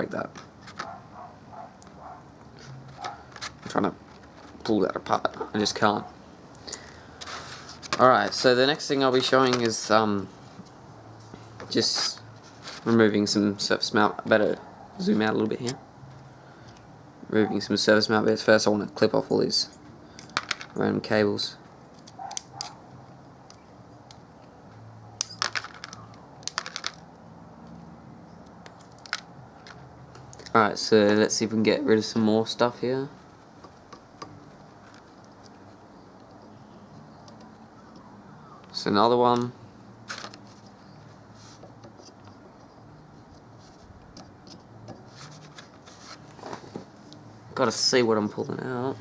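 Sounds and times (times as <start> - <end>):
wire cutters snipping: 22.0 - 22.8.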